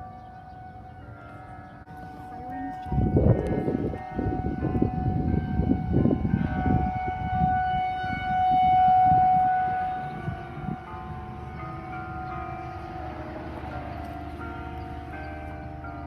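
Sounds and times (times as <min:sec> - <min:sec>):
faint church bells ringing: 0:00.0 - 0:16.0
tornado warning siren wailing: 0:00.0 - 0:16.0
gusty low rumble: 0:02.3 - 0:11.6.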